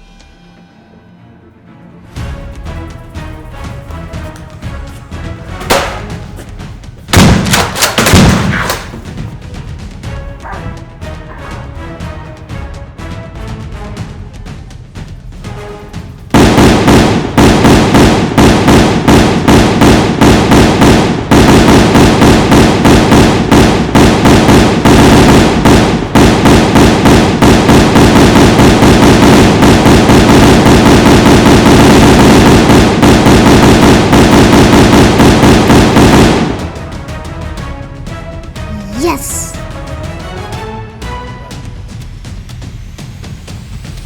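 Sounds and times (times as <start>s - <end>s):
loud music: 2.1s - 16.7s, 38.6s - 39.6s
rapid pops: 5.2s - 9.2s.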